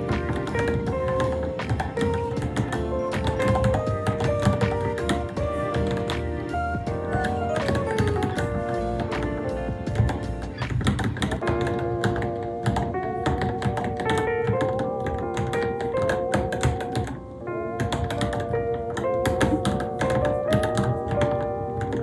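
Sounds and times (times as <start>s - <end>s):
background music with melody: 0.0s - 22.0s
mechanical keyboard typing: 0.0s - 22.0s.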